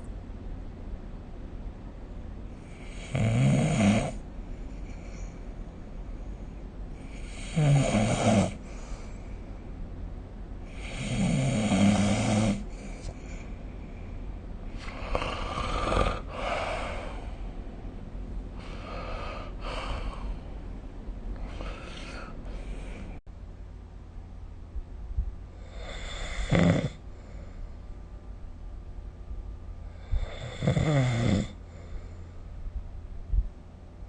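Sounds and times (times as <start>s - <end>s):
person snoring: 2.7s - 4.2s, 7.0s - 8.6s, 10.7s - 13.1s, 14.8s - 17.4s, 21.4s - 23.2s, 25.6s - 27.0s, 30.0s - 31.6s.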